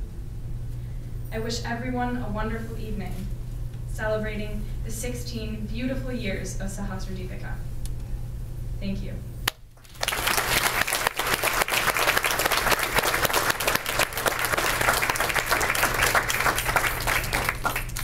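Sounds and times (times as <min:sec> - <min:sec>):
audience applauding: 0:09.8 - 0:18.0.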